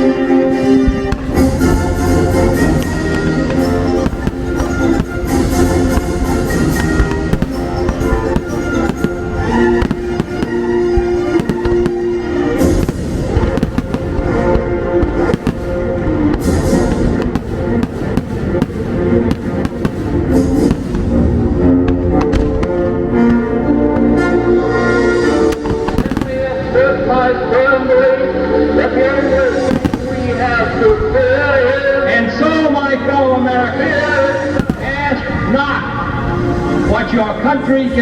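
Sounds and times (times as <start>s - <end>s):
fireworks bursting and crackling: 0.0s - 23.4s, 25.0s - 27.0s, 29.5s - 31.2s, 34.3s - 36.4s
loud orchestral music: 0.0s - 38.0s.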